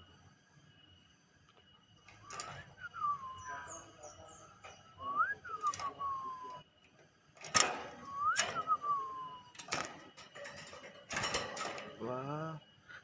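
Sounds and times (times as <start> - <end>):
rising and falling whistle: 2.2 - 4.0, 4.9 - 6.7, 7.9 - 9.7.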